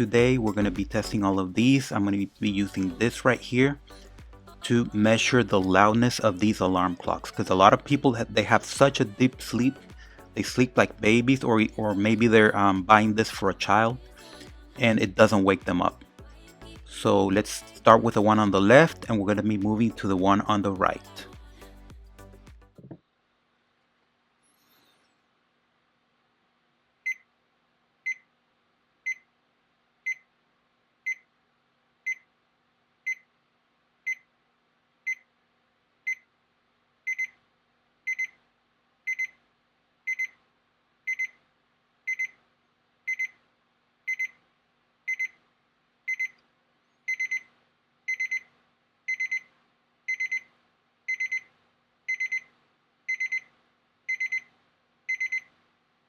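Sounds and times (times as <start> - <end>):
alarm clock beeping: 37.1 - 37.3, 38.1 - 38.3, 39.1 - 39.3, 40.1 - 40.3, 41.1 - 41.3, 42.1 - 42.4, 43.1 - 43.4, 44.1 - 44.3, 45.1 - 45.4, 46.1 - 46.4, 47.1 - 47.5, 48.1 - 48.5, 49.1 - 49.5, 50.1 - 50.5, 51.1 - 51.5, 52.1 - 52.5, 53.1 - 53.5, 54.1 - 54.5, 55.1 - 55.5.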